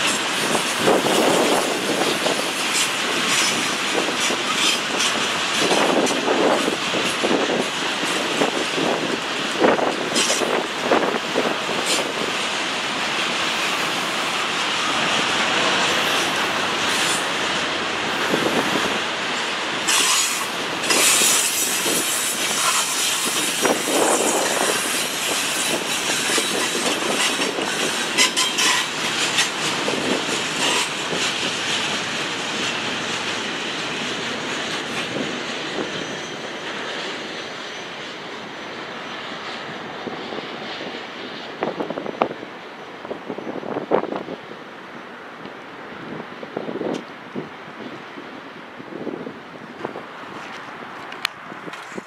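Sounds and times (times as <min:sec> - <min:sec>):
wheels clicking over rail joints: 0:00.0 - 0:38.0, 0:49.7 - 0:52.0
train wheels rumbling on rail: 0:00.0 - 0:52.0.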